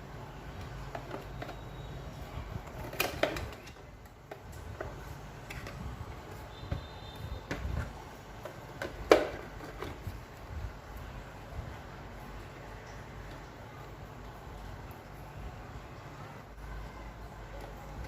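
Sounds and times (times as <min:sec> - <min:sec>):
clicks and knocks of objects handled: 0:00.5 - 0:01.8, 0:02.6 - 0:10.4.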